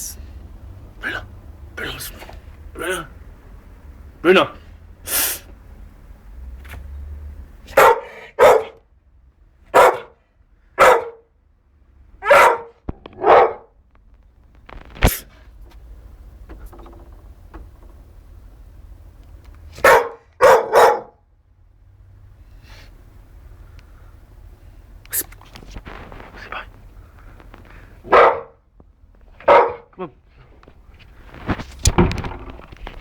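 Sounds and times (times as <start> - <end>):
dog barking: 7.7 - 8.9, 9.7 - 10.2, 10.8 - 11.3, 12.2 - 13.8, 19.7 - 21.2, 28.0 - 28.6, 29.4 - 30.0.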